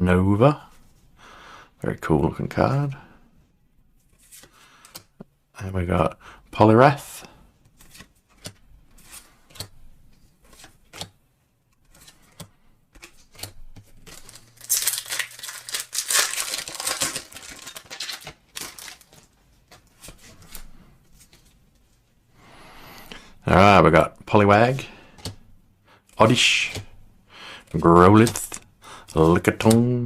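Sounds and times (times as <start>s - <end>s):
foil wrapper tearing and crinkling: 14.0s - 19.3s.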